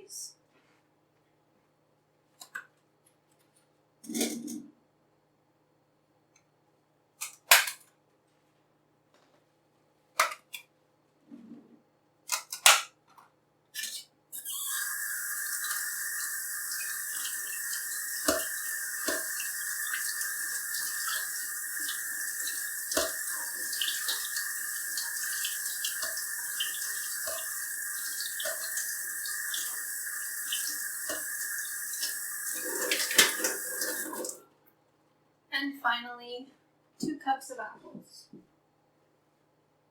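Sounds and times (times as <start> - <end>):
tap water running into sink: 14.4 - 34.4.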